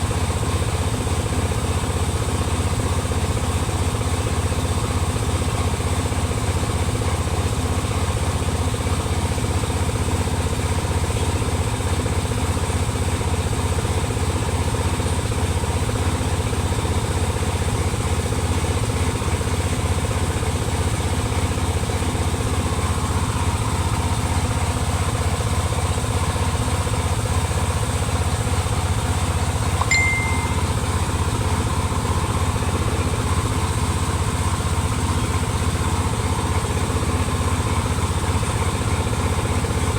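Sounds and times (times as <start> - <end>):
diesel truck engine idling: 0.1 - 39.9
short high beep: 29.8 - 30.9.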